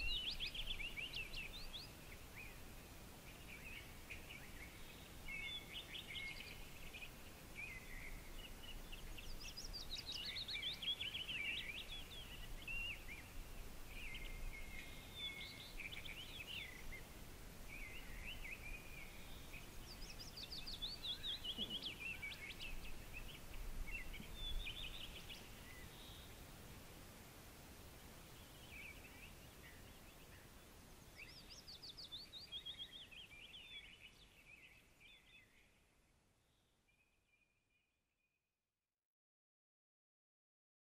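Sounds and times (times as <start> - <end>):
songbirds singing: 0.0 - 37.9
faint background hiss: 0.0 - 38.1.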